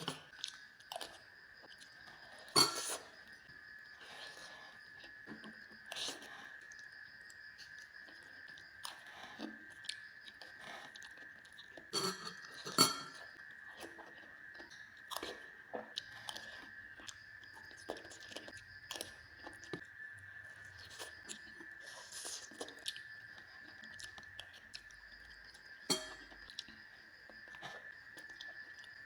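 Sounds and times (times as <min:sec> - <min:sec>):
chewing with wet mouth sounds: 0:00.0 - 0:19.9, 0:20.6 - 0:29.0
sharp clink: 0:25.9 - 0:26.3.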